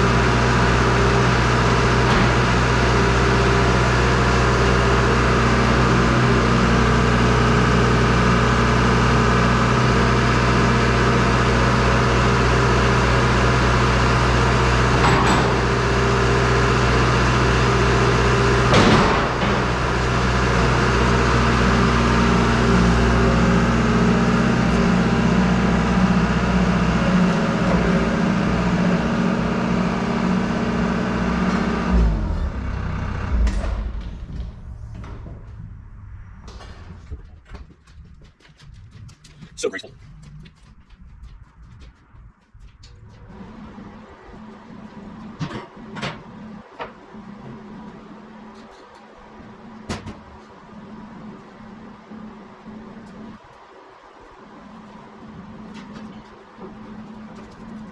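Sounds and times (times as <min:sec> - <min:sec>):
engine shutting off: 0:00.0 - 0:37.7
engine running steadily: 0:00.0 - 0:57.9
clunk: 0:02.0 - 0:02.6, 0:14.9 - 0:15.8, 0:31.8 - 0:37.7.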